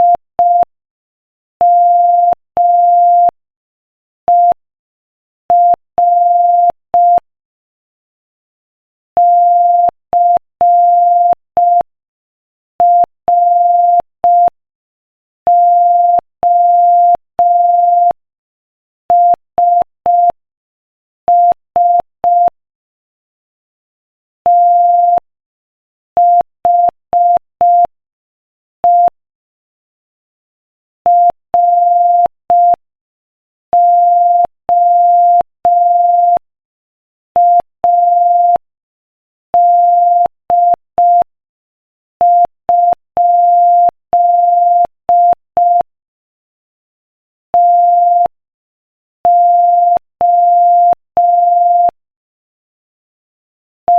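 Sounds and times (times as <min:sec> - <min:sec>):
morse code beeps: 0:01.6 - 0:03.4, 0:09.2 - 0:11.9, 0:15.5 - 0:18.2, 0:24.5 - 0:25.2, 0:26.2 - 0:27.9, 0:28.8 - 0:29.2, 0:31.1 - 0:32.8, 0:33.8 - 0:36.4, 0:37.4 - 0:38.6, 0:39.6 - 0:41.3, 0:42.2 - 0:45.9, 0:47.6 - 0:48.4, 0:49.3 - 0:52.0.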